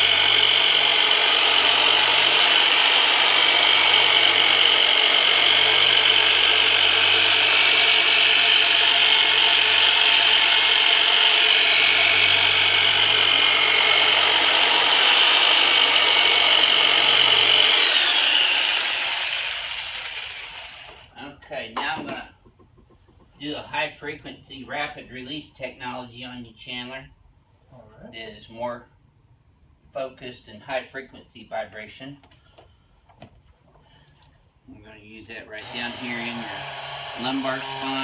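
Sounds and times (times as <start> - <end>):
electric massager buzzing: 0.0 - 20.4.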